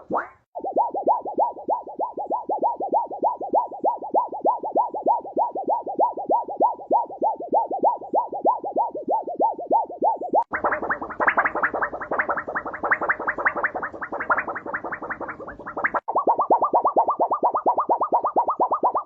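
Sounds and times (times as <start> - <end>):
metal sheet warbling: 0.0 - 3.2, 7.6 - 19.0.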